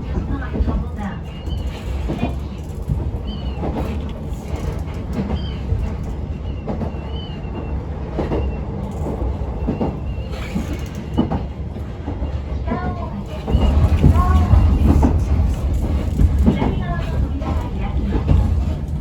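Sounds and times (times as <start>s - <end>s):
train rumbling: 0.0s - 19.0s
wheels clacking over rail joints: 0.0s - 19.0s
wheels squeaking: 0.8s - 12.5s.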